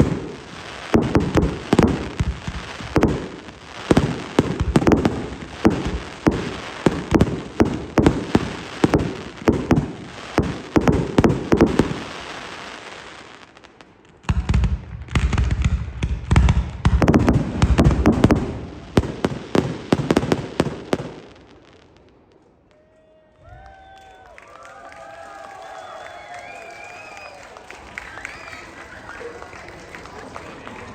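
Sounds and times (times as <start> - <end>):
fireworks bursts: 0.0 - 22.8.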